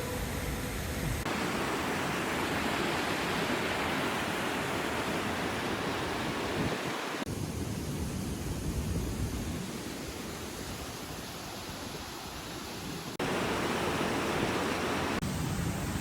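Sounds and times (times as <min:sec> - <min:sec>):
waterfall roaring: 0:00.0 - 0:07.3, 0:13.2 - 0:15.2.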